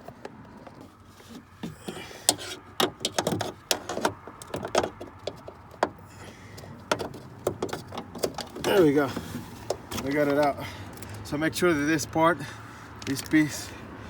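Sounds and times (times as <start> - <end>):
metal parts knocking and rattling: 0.7 - 10.5.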